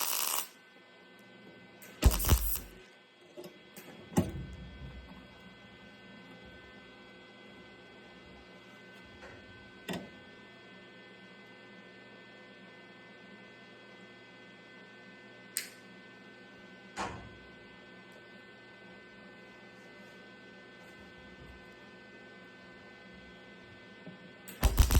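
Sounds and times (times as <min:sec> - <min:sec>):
electrical hum: 0:00.0 - 0:11.8, 0:19.4 - 0:24.9
sharp clicks: 0:24.5 - 0:24.9.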